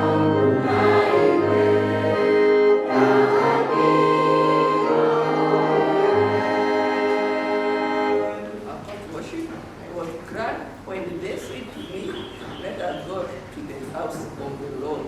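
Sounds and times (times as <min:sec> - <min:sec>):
choral music: 0:00.0 - 0:08.6.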